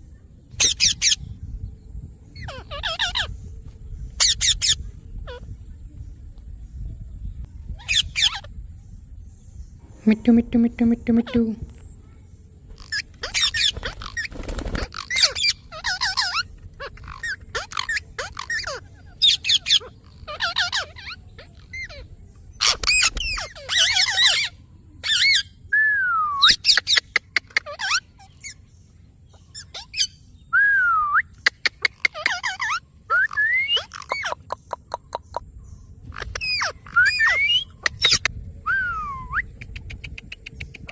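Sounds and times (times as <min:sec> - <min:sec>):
parrot chirping and screeching: 0:15.1 - 0:21.9, 0:32.1 - 0:32.8, 0:33.4 - 0:34.4, 0:36.1 - 0:38.3.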